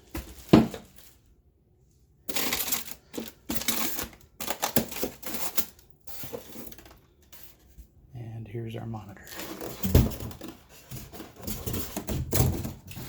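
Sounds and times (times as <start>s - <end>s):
packaging crinkling and clicking: 2.3s - 7.6s.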